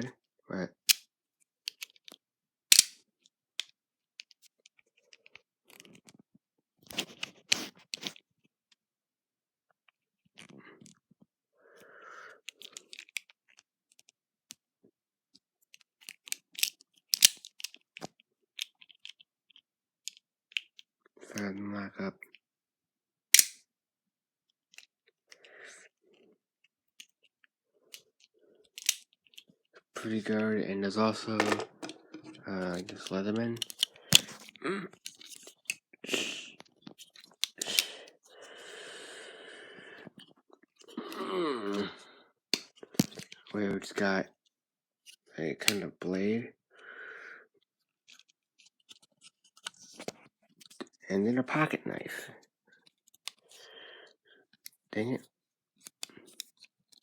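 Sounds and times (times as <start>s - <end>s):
folding knife metallic clicks: 2.7s - 3.0s, 23.4s - 23.6s
steady scraping noise: 30.0s - 33.6s.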